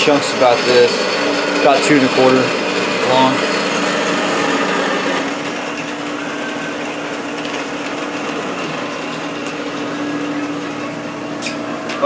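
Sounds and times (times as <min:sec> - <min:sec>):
shop machinery humming and whirring: 0:00.0 - 0:12.0.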